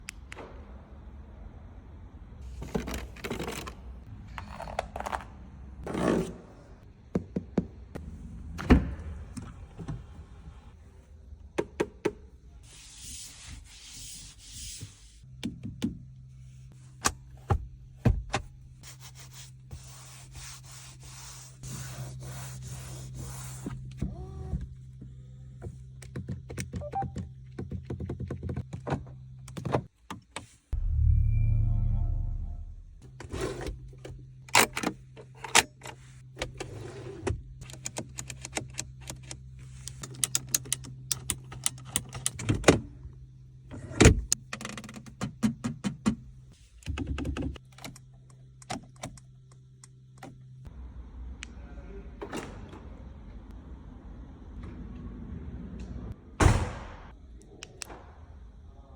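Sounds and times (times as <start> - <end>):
low hum: 30.8 - 33.2.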